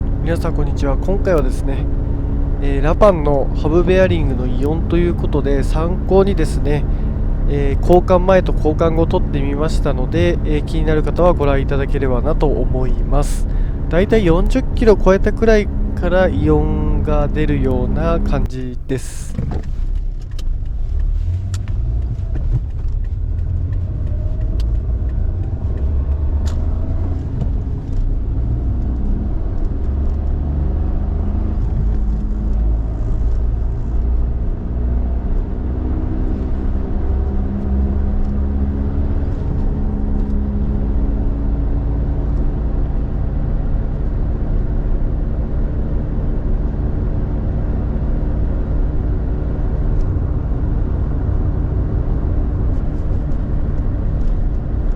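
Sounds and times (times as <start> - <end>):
car driving rumble: 0.0 - 19.9, 44.1 - 54.9
wheel bearing hum: 0.0 - 19.9.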